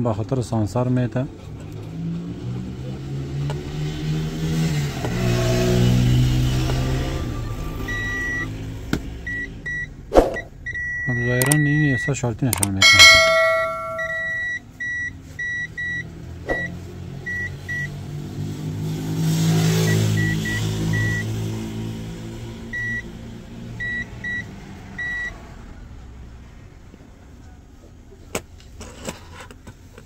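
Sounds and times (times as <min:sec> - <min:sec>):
vehicle engine passing: 0:01.8 - 0:07.6, 0:16.2 - 0:23.6
multimeter continuity beeping: 0:10.7 - 0:11.8.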